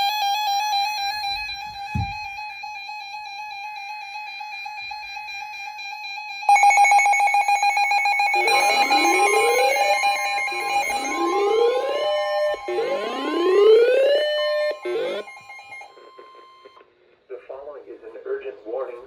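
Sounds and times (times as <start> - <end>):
high warbling alert beep: 8.2 - 16.8
rising siren sweeps: 8.3 - 16.8.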